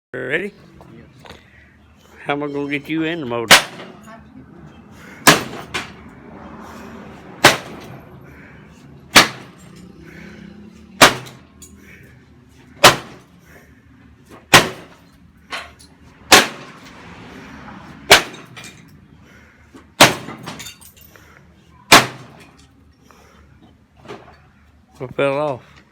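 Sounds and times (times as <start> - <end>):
heavy metal-on-metal blows: 3.5 - 4.1, 5.2 - 6.0, 7.4 - 8.0, 9.1 - 9.8, 11.0 - 11.5, 12.8 - 13.4, 14.5 - 15.2, 16.3 - 16.9, 18.0 - 18.8, 20.0 - 20.9, 21.9 - 22.6.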